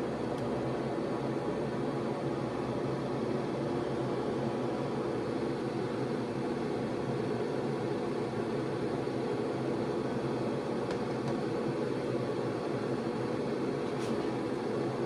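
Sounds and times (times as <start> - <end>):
ventilation fan running: 0.0 - 15.0.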